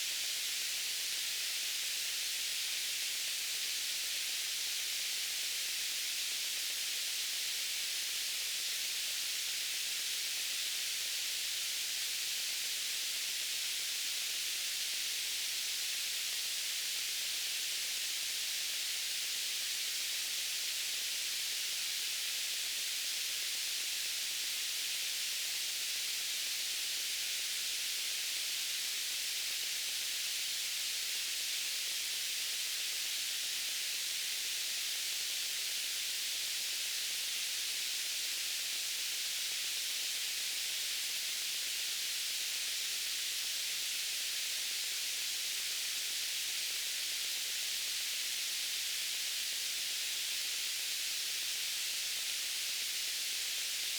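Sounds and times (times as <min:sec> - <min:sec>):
white noise hiss: 0:00.0 - 0:53.9.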